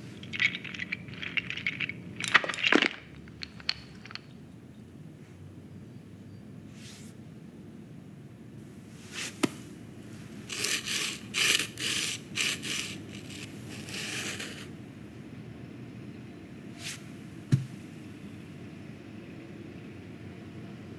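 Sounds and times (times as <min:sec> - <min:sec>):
scraping rubbing noises: 0:10.5 - 0:14.7.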